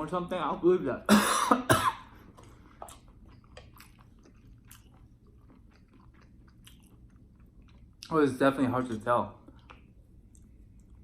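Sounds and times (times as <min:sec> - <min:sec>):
person chewing food: 0:02.1 - 0:08.1, 0:08.8 - 0:11.0.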